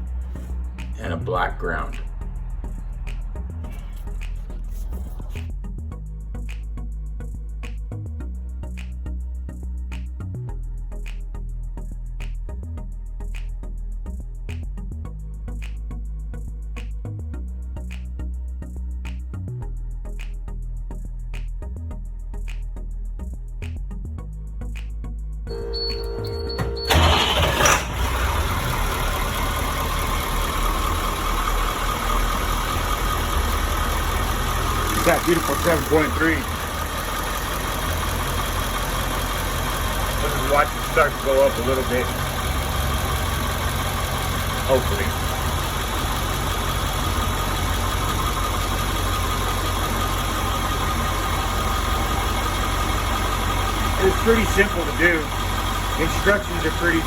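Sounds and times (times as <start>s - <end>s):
diesel engine cranking and idling: 0.0s - 5.8s, 25.5s - 57.0s
electronic tone: 25.5s - 27.0s.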